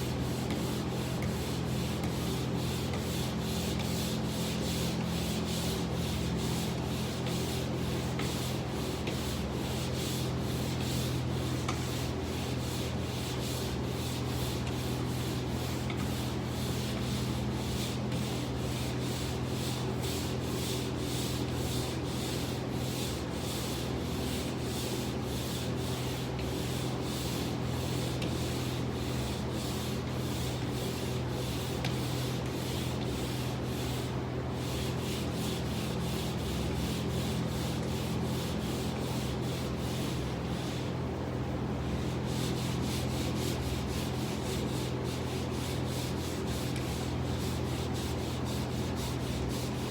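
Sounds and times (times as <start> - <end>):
sandpaper scraping: 42.4 - 49.8.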